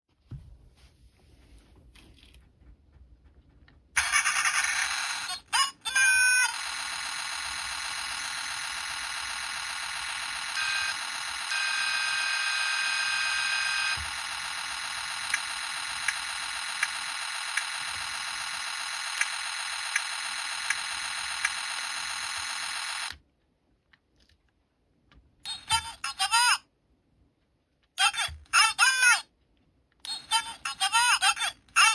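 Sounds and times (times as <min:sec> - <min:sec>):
extra electronic tones: 0:06.0 - 0:23.0
faint regular clicks: 0:19.1 - 0:25.8.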